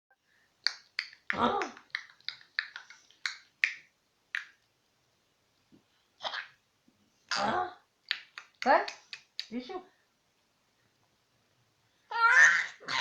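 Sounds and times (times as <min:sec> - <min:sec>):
child clicking mouth and tongue: 0:00.6 - 0:04.5, 0:08.0 - 0:09.6.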